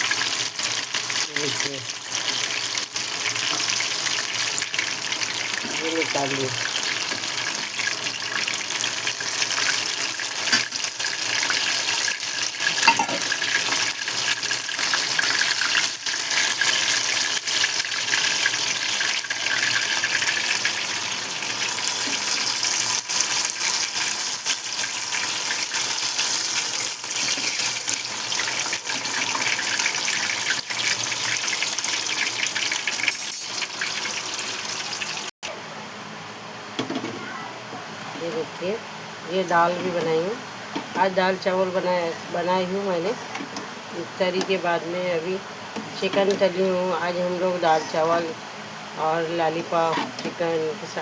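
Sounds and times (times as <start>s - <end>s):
deep-frying sizzle: 0.0s - 35.3s
oil crackling and popping: 0.0s - 35.3s.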